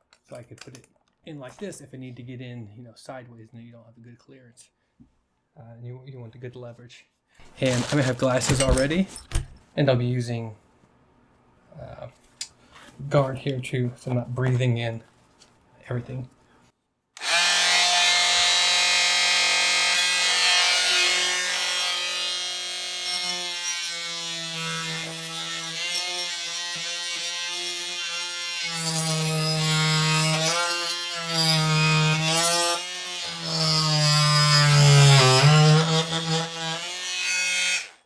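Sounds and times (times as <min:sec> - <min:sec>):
oscillating multi-tool cutting wood: 0:17.2 - 0:38.0.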